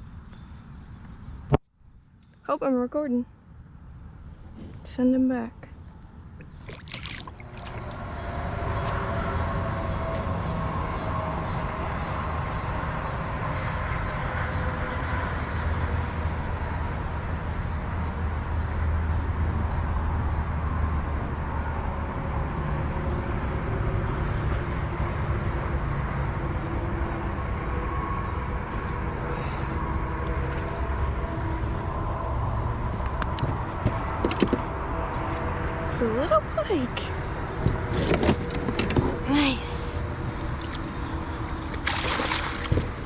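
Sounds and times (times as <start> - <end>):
wind buffeting microphone: 27.4 - 43.0.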